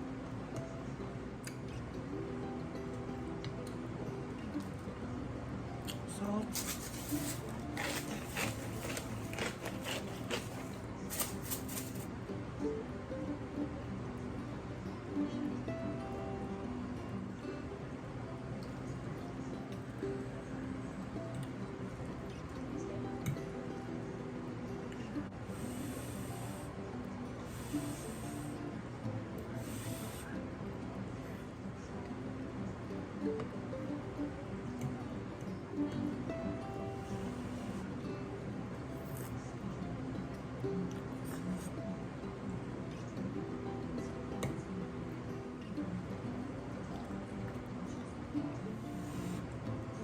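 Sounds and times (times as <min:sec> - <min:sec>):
background music: 0:00.0 - 0:50.0
person chewing and eating: 0:06.9 - 0:10.8.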